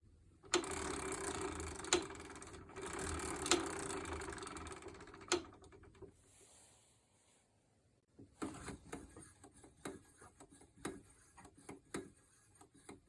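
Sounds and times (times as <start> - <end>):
ratchet-like wheel ticking: 0.5 - 6.0.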